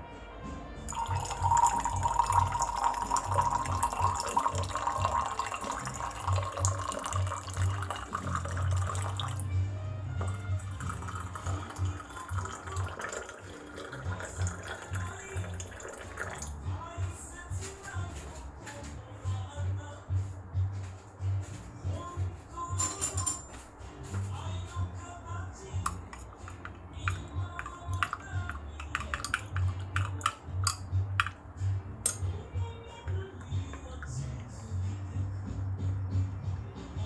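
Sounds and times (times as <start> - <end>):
background music: 0.0 - 37.0
water pouring into a container: 0.9 - 9.5, 10.2 - 16.6, 26.4 - 30.8.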